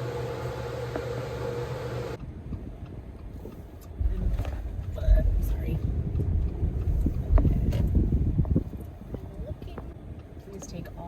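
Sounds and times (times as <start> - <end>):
mechanical room hum: 0.0 - 11.0
wind rumble on microphone: 2.2 - 11.0.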